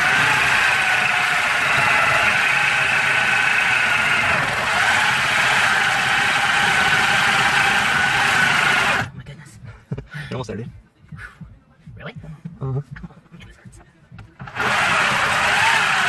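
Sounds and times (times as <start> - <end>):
power tool cutting metal: 0.0 - 9.1, 14.4 - 16.0.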